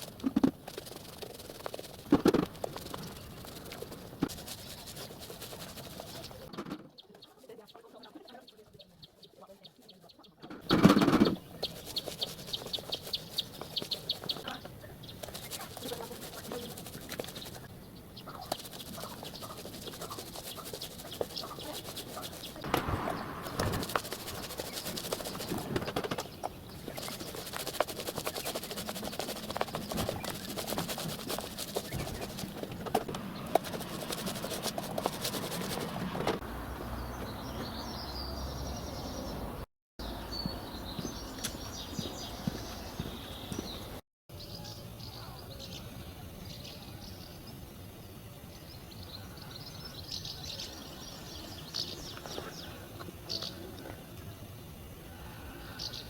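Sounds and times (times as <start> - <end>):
scratchy noise with clicks: 0.0 - 7.3, 18.3 - 36.4
small birds chirping: 0.0 - 56.0.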